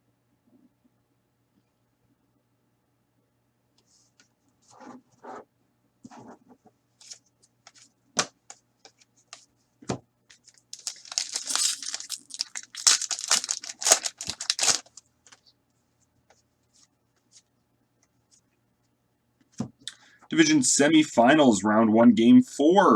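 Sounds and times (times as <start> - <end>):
wrapper tearing and crinkling: 10.5 - 15.0.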